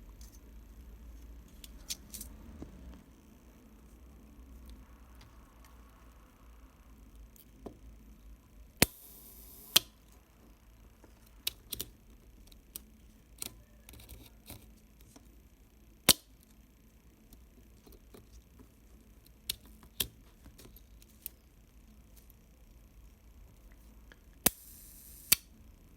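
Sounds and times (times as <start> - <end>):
camera timing mechanism buzz: 8.8 - 10.0, 24.4 - 25.5.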